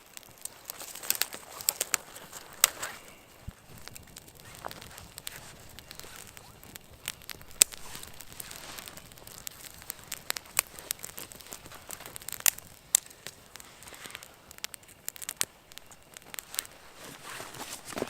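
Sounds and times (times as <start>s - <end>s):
faint hiss of fire: 0.0s - 18.0s
sharp snaps of burning wood: 0.0s - 18.0s
wood fire crackling: 0.0s - 18.0s.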